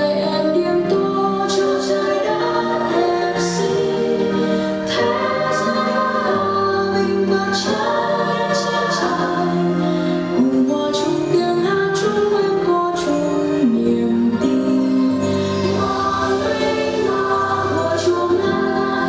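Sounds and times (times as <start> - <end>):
choir singing held notes: 1.0 - 11.8, 15.6 - 19.0.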